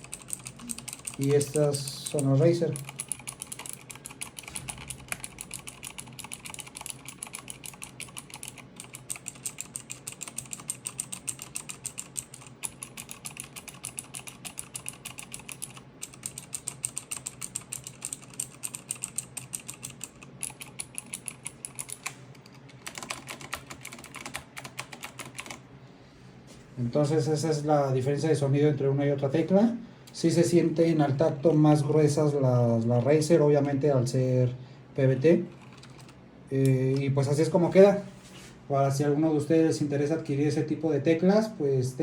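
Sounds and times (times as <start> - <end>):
mechanical keyboard typing: 0.0 - 25.7, 35.5 - 36.8.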